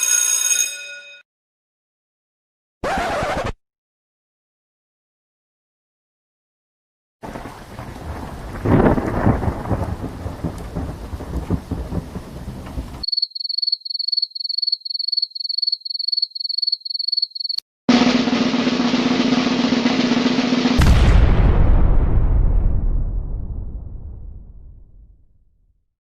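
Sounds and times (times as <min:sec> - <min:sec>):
loud steady buzzing: 0:17.9 - 0:20.8
noisy rumble: 0:17.9 - 0:24.7.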